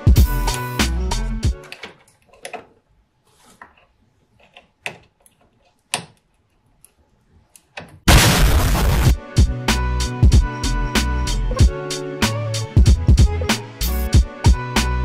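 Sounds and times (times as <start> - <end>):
loud rushing noise burst: 8.1 - 9.1.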